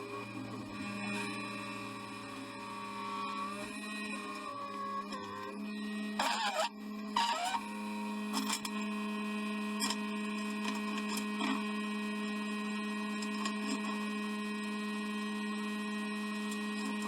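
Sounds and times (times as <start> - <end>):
steady mechanical hum: 0.0 - 17.0.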